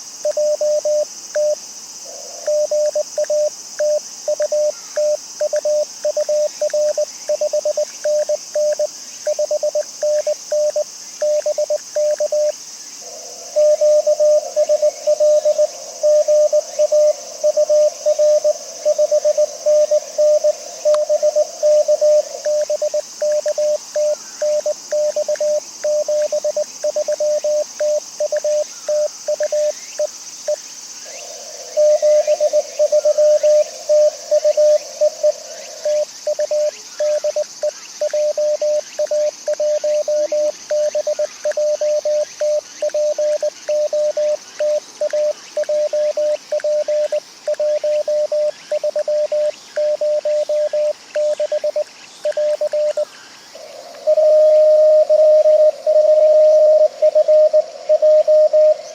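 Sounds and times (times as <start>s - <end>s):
faint hiss: 0.0s - 58.9s
morse code tone: 36.3s - 53.0s, 54.1s - 58.8s.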